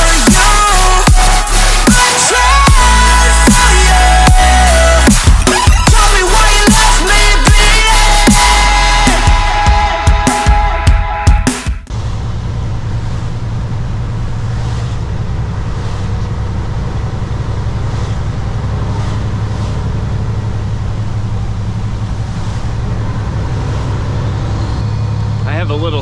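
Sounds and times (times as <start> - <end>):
diesel truck engine drone: 0.0 - 11.2, 11.8 - 26.0
road noise: 11.9 - 26.0.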